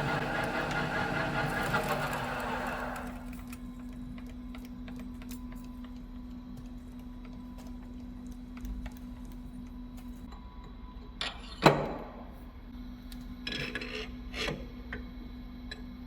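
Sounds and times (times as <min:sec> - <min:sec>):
lathe cutting metal: 0:00.0 - 0:03.3
lathe machine hum: 0:00.0 - 0:03.4.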